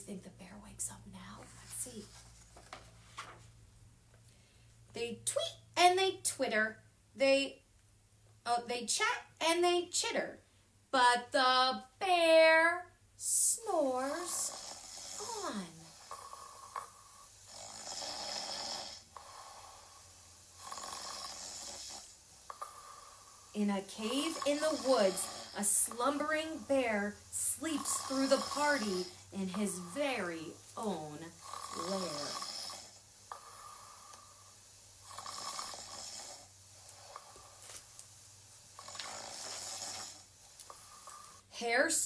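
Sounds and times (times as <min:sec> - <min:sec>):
person imitating bear snoring: 0:13.3 - 0:34.3, 0:35.0 - 0:37.6, 0:38.8 - 0:40.3.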